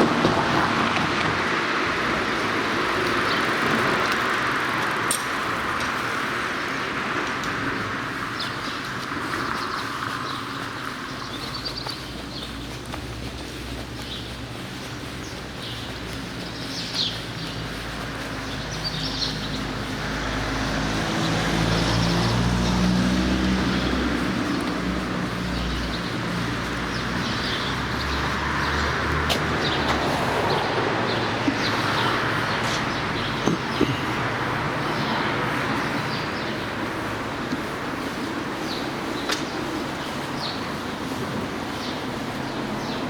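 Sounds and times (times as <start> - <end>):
steady rushing noise: 0.0 - 43.0
small birds chirping: 1.8 - 43.0
vehicle engine passing: 17.7 - 38.1.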